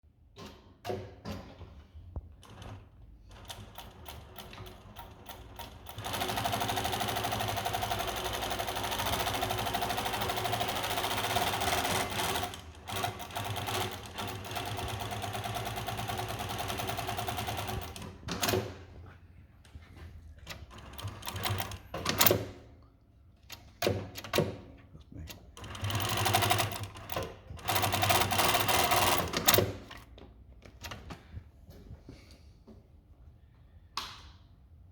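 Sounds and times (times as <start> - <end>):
industrial sewing machine stitching: 3.3 - 18.8, 20.7 - 22.6, 25.6 - 30.0.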